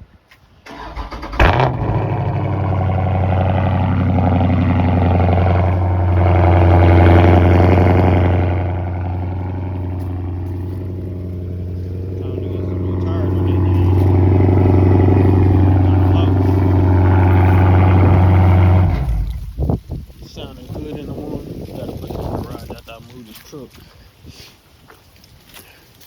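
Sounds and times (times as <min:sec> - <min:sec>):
car engine starting and idling: 0:00.6 - 0:19.8
starter cranking: 0:00.7 - 0:02.8.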